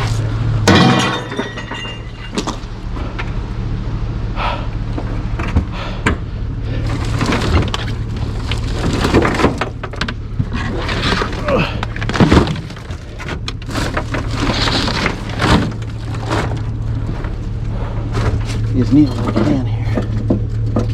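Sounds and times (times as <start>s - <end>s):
scrap metal clanging: 0.0s - 3.2s, 10.4s - 17.4s
metal clanks and scrapes: 0.0s - 3.4s, 6.7s - 17.4s, 18.1s - 20.9s
low hum: 0.0s - 20.9s.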